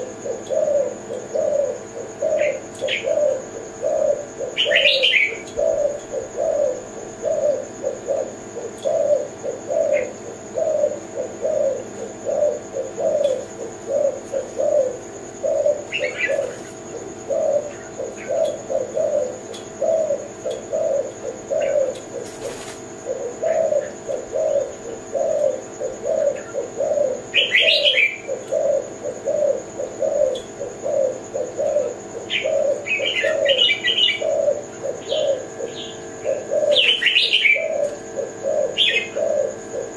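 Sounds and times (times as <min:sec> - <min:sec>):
dove cooing: 0:00.0 - 0:39.9
small bird chirps: 0:00.0 - 0:39.9.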